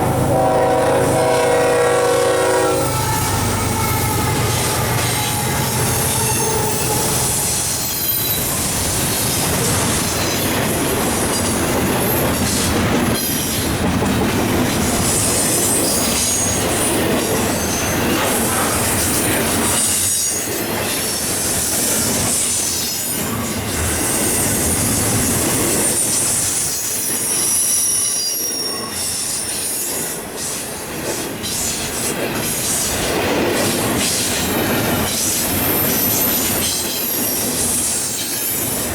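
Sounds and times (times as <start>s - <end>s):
freight train wheels on rails: 0.0s - 38.9s
high-pitched wheel squeal: 1.2s - 8.6s.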